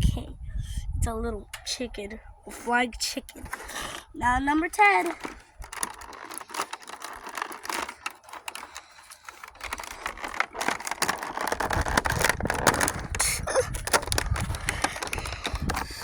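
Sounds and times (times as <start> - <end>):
cardboard clicks and rustles: 3.4 - 4.1, 4.8 - 16.0
low bumps: 5.0 - 16.0.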